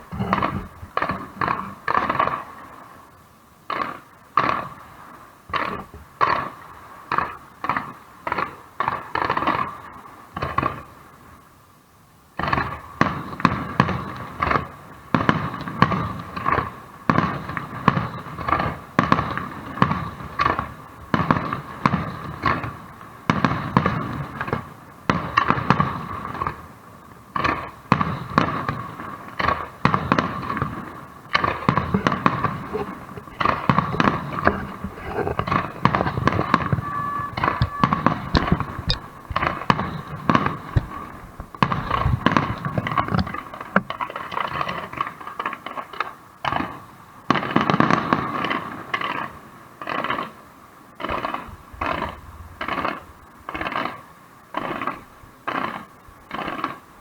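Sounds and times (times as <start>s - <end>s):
fireworks shells bursting: 29.9s - 44.7s.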